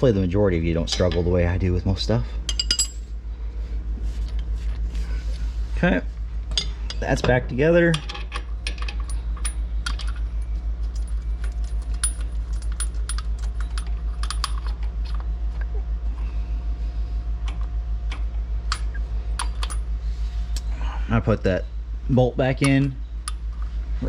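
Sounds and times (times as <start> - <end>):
low pulsing hum: 0.0 - 24.0
tools and bolts clinking: 0.8 - 1.4, 2.5 - 3.1, 6.5 - 15.2, 17.5 - 19.9.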